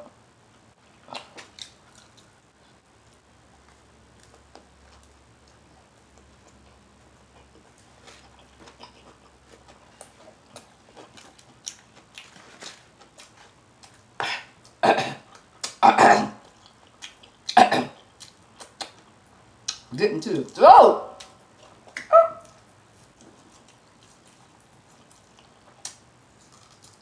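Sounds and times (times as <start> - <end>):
wet chewing and smacking: 1.1 - 2.4, 3.1 - 15.8, 16.4 - 19.9, 21.2 - 27.0
loud burps: 14.3 - 15.2, 17.6 - 18.0.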